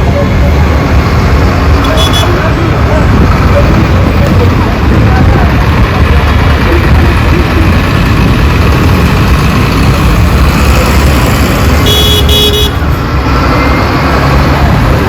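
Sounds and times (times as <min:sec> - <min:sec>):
vehicle road and engine noise: 0:00.0 - 0:15.0
car horn toot: 0:01.8 - 0:02.4, 0:11.8 - 0:12.8.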